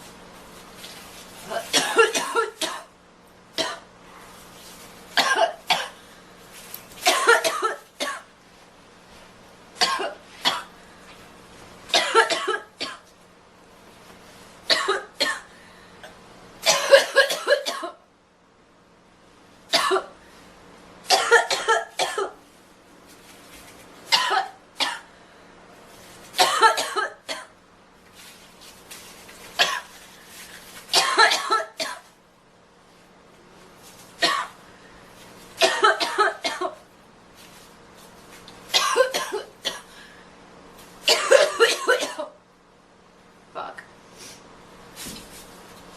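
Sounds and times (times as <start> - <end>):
girl coughing: 1.5 - 2.9, 3.6 - 3.9, 5.2 - 6.0, 7.0 - 8.3, 9.8 - 10.7, 11.9 - 13.0, 14.7 - 15.5, 16.6 - 18.0, 19.7 - 20.2, 21.1 - 22.4, 24.1 - 25.1, 26.4 - 27.5, 29.6 - 30.0, 30.9 - 32.1, 34.2 - 34.6, 35.6 - 36.8, 38.8 - 39.9, 41.1 - 42.4.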